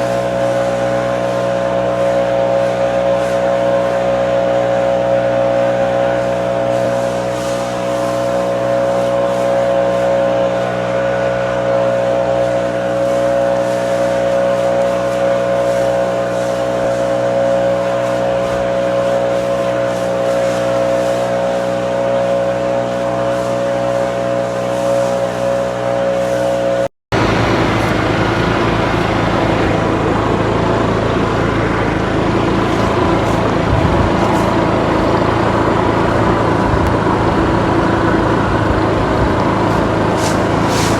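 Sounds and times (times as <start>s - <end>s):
engine running steadily: 0.0s - 40.9s
rough noisy engine: 0.0s - 40.9s.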